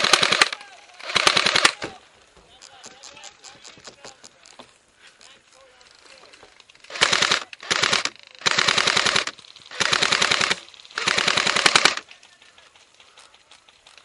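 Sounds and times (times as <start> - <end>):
airsoft guns firing full-auto: 0.0 - 2.0, 6.8 - 14.0.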